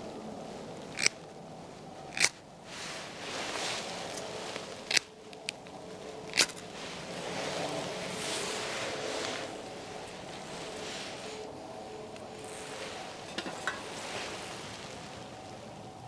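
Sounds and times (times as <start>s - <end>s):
steady outdoor hiss: 0.0s - 16.0s
dry wood cracking: 0.8s - 1.3s, 2.1s - 2.4s, 4.1s - 6.7s.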